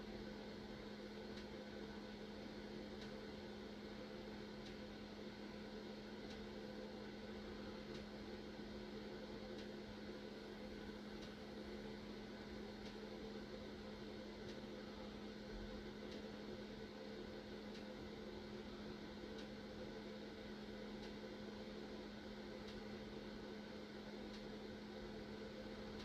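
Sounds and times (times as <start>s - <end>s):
faint electrical hum: 0.0s - 26.0s
faint tick: 1.3s - 1.6s, 3.0s - 3.2s, 4.6s - 4.8s, 6.2s - 6.5s, 7.9s - 8.1s, 9.5s - 9.8s, 11.2s - 11.4s, 12.8s - 13.0s, 14.4s - 14.6s, 16.1s - 16.3s, 17.7s - 17.9s, 19.3s - 19.6s, 21.0s - 21.2s, 22.6s - 22.9s, 24.3s - 24.5s.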